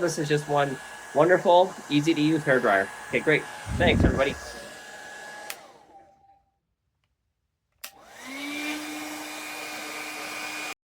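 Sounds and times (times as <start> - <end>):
hair dryer airflow rush: 0.0 - 6.1, 7.8 - 10.8
hair dryer motor whine: 0.0 - 6.3, 7.8 - 10.8
hair dryer switch click: 5.4 - 5.7, 7.8 - 8.3.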